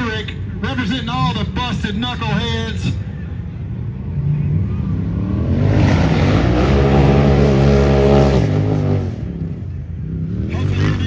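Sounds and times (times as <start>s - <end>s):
race engine under hard throttle: 2.9s - 11.0s.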